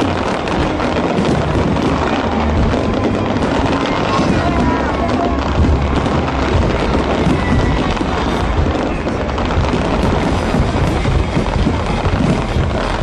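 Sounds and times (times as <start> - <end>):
fireworks crackling and bursting: 0.0 - 13.0
fireworks show music: 0.0 - 13.0.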